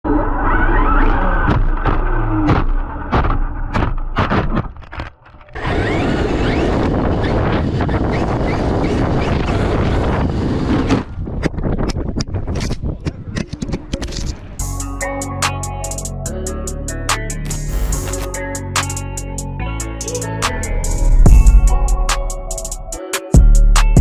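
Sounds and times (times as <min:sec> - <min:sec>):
toy truck motor whining: 0:05.5 - 0:08.6.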